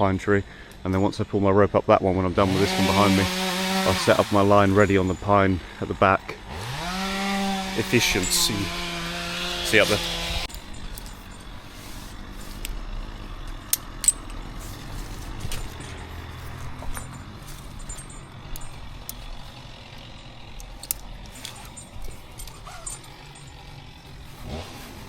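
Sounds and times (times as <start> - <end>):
low engine hum: 3.9 - 25.0
metallic clicks and clinks: 10.5 - 12.8, 13.4 - 24.4.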